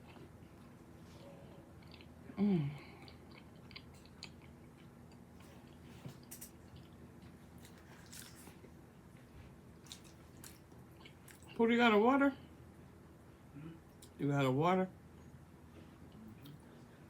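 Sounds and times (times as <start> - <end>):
woman humming mm: 2.3 - 3.1
person chewing and biting food: 3.0 - 8.7, 9.8 - 11.6.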